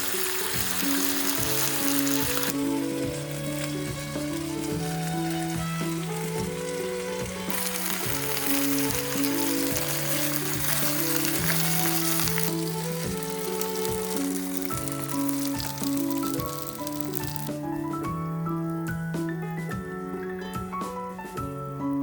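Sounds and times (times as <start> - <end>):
background music: 0.0 - 22.0
food sizzling in a pan: 0.0 - 22.0.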